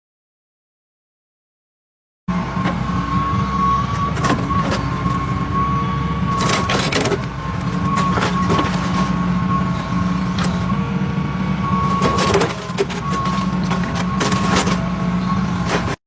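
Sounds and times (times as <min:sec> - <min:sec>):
machinery hum and whine: 0:02.3 - 0:16.0
sharp clicks and clanks: 0:03.9 - 0:05.4, 0:06.3 - 0:09.2, 0:09.8 - 0:10.8, 0:11.8 - 0:15.0, 0:15.6 - 0:16.0.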